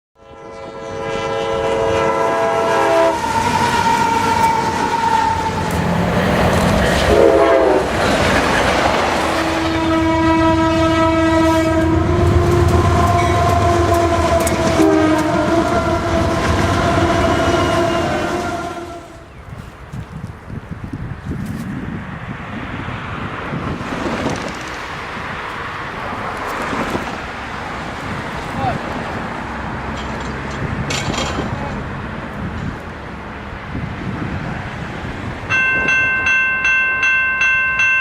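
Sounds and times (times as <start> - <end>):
locomotive horn blowing: 0.2 - 6.0, 7.1 - 8.0, 9.4 - 19.3
train rumbling on rails: 0.2 - 38.0.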